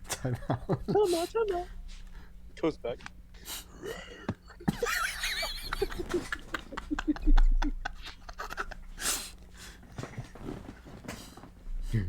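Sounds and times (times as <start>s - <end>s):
stifled breathy laughter: 3.8s - 9.0s.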